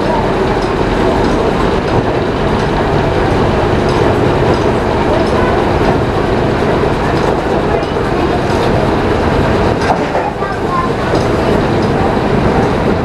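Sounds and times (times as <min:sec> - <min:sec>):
steam engine driving sawmill: 0:00.0 - 0:13.0.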